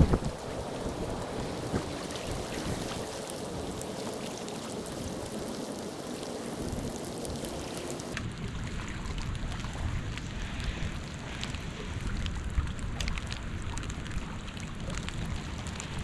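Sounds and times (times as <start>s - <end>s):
wind buffeting microphone: 0.0s - 8.2s
raindrops ticking close by: 0.0s - 9.4s
steady rain: 0.0s - 16.0s.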